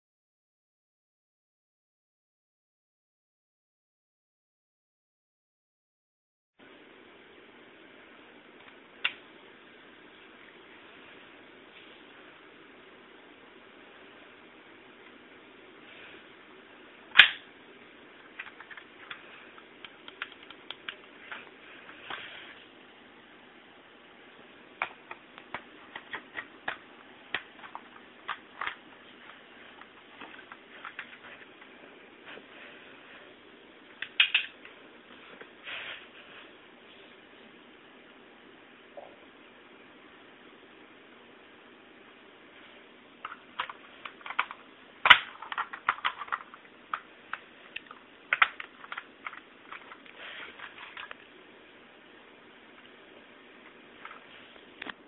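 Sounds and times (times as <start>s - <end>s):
loud plastic snaps: 17.1s - 17.5s
plastic bricks clicking and knocking: 43.2s - 51.2s.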